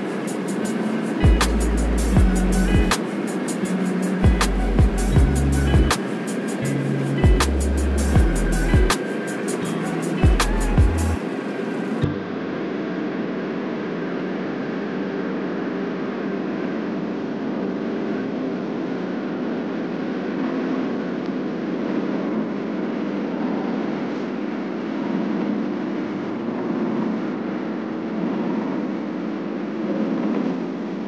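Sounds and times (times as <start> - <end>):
moving vehicle drone: 0.0 - 17.4.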